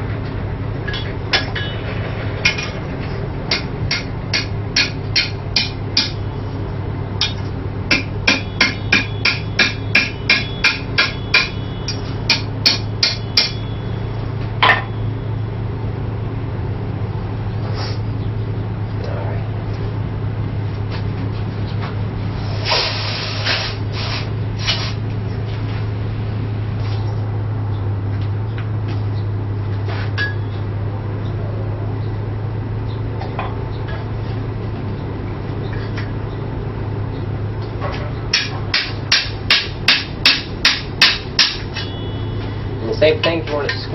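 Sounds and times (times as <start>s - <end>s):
low hum: 0.0s - 39.8s
hammer ringing on steel: 7.2s - 14.0s, 38.3s - 42.4s
short ringing ping: 41.7s - 42.4s.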